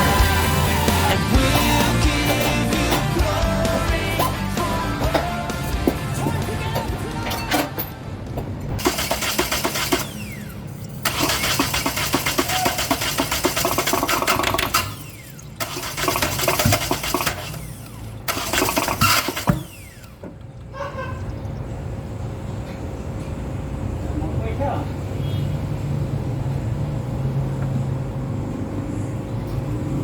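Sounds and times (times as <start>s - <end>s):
diesel engine cranking: 0.0s - 21.5s.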